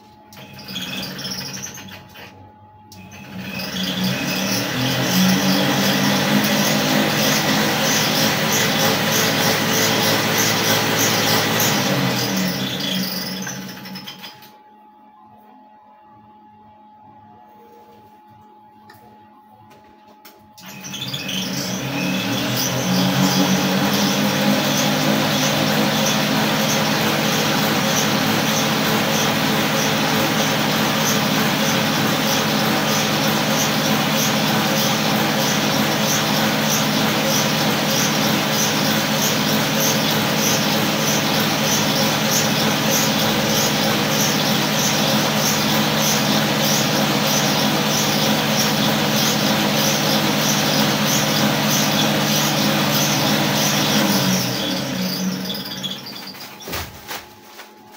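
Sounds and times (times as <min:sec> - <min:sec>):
cotton candy machine motor humming: 0:00.0 - 0:15.2, 0:15.9 - 0:57.9.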